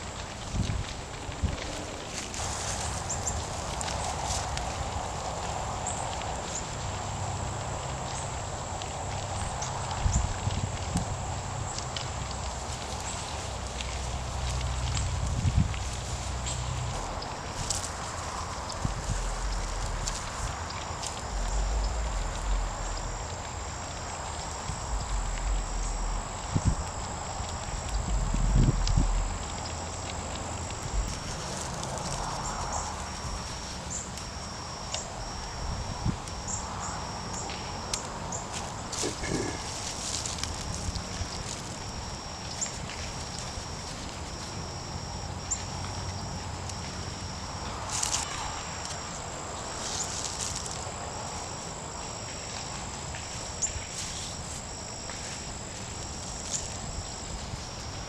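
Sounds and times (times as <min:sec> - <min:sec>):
insects chirping in trills: 0:00.0 - 0:58.0
insect calling in short phrases: 0:38.7 - 0:41.0.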